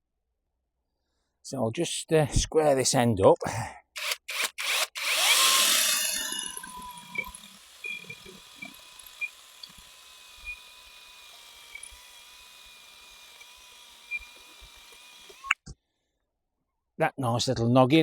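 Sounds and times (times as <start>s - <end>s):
electric pole saw motor winding down: 4.0s - 15.6s.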